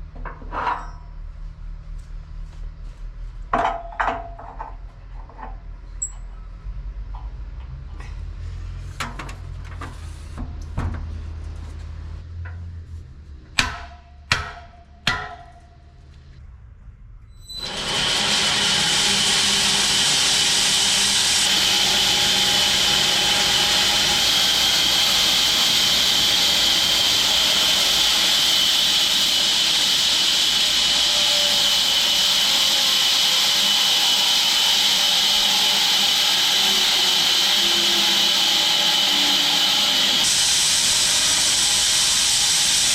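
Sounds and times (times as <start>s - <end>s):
bandsaw mill cutting log: 17.6s - 42.9s.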